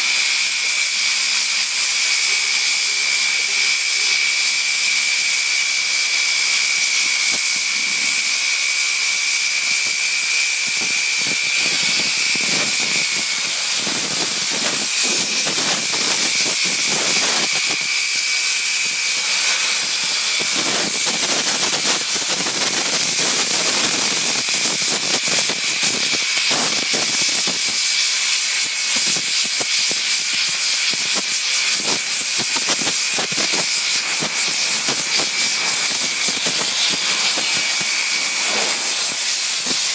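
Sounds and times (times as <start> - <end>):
torch cutting metal hiss: 0.0 - 39.9
crackling: 18.8 - 27.6, 30.3 - 39.9.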